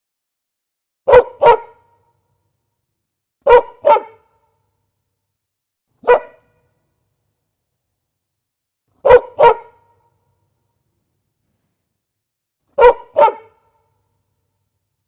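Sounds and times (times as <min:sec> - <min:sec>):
dog barking: 0:01.1 - 0:01.9, 0:03.4 - 0:04.5, 0:06.0 - 0:06.6, 0:09.0 - 0:10.0, 0:12.8 - 0:13.8.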